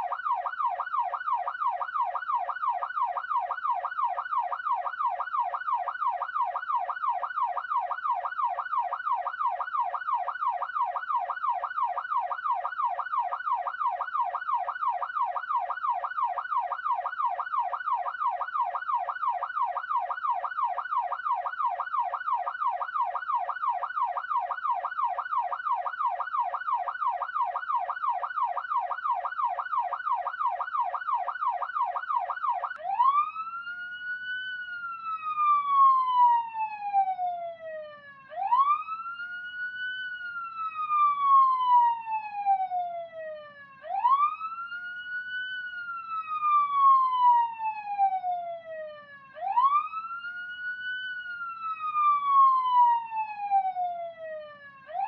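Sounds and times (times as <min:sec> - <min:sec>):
police siren wailing: 0:00.0 - 0:55.0
police siren yelping: 0:00.0 - 0:55.0.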